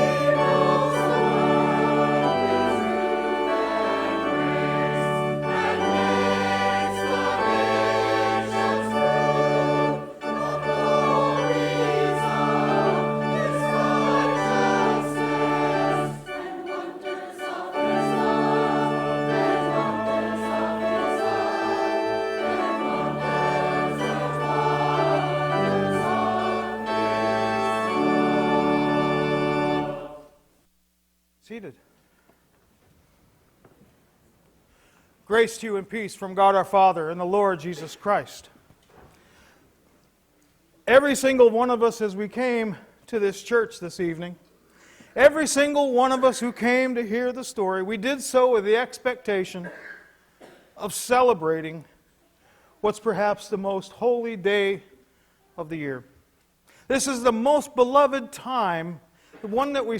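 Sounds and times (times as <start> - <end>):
church organ playing hymn: 0.0 - 30.3
voices singing: 0.0 - 30.4.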